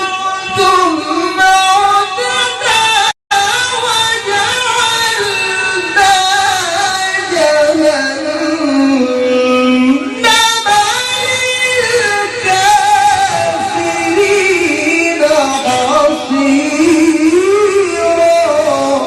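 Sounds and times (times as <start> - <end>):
man reciting melismatic chant: 4.4 - 19.0.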